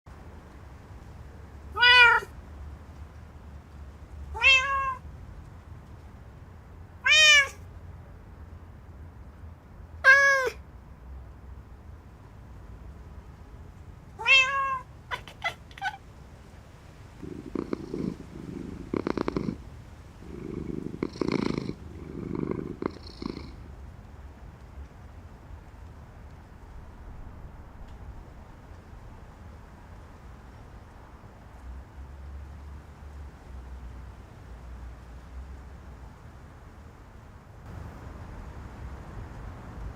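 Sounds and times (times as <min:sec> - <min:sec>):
cat meowing: 0:01.7 - 0:02.3, 0:04.3 - 0:05.0, 0:07.0 - 0:07.6, 0:10.0 - 0:10.6, 0:14.2 - 0:16.0, 0:17.2 - 0:19.6
cat purring: 0:17.1 - 0:23.8.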